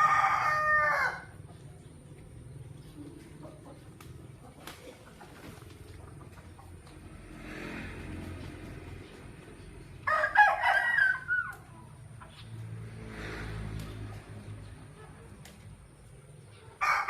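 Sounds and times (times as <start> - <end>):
rooster crowing: 0.0 - 1.4, 10.0 - 11.7, 16.8 - 17.0.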